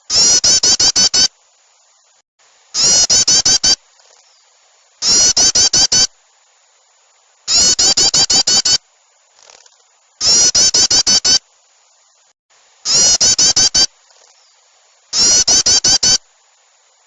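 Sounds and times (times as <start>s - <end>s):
small birds chattering: 0.0s - 1.3s, 2.8s - 6.1s, 7.5s - 8.8s, 9.4s - 11.4s, 12.9s - 16.2s.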